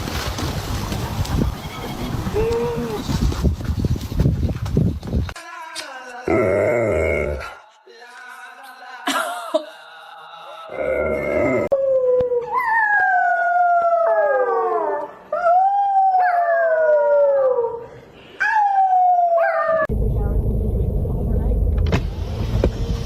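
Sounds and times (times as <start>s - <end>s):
dog howling: 18.4s - 19.9s.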